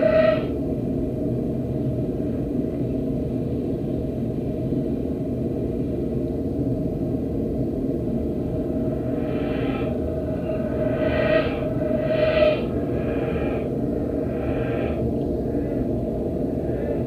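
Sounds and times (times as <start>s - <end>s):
reversed crow caw: 8.7s - 15.9s.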